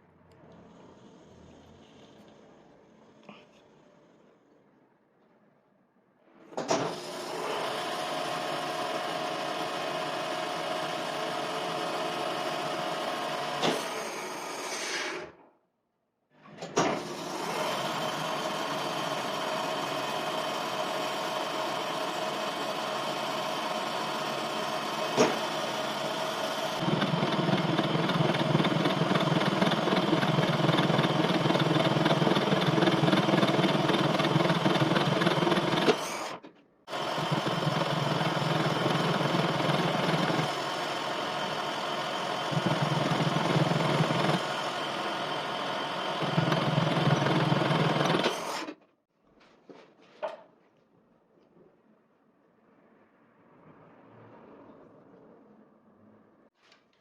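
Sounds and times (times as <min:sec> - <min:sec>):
metal lathe humming: 0:17.2 - 0:48.7.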